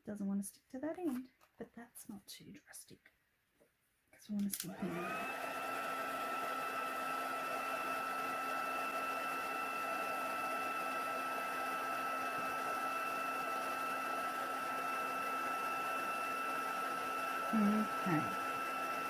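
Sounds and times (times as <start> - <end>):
heat tool fan whining: 4.5 - 19.0.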